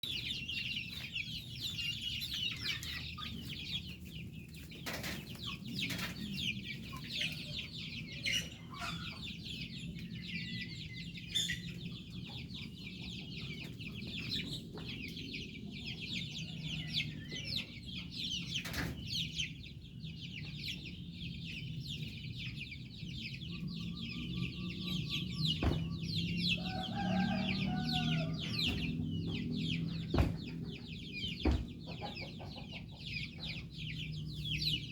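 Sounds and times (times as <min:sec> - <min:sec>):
chickens clucking: 0:00.0 - 0:34.9
sharp knocks: 0:25.6 - 0:26.0, 0:28.6 - 0:30.8, 0:31.4 - 0:31.8.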